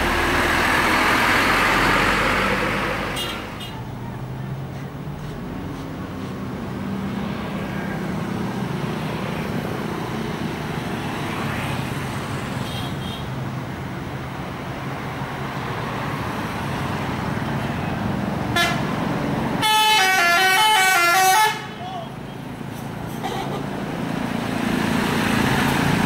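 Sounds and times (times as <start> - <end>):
heavy vehicle engine running: 0.0 - 12.6, 22.1 - 26.0
roadside traffic noise: 0.0 - 26.0
bus horn playing melody: 18.5 - 18.9, 19.6 - 21.8.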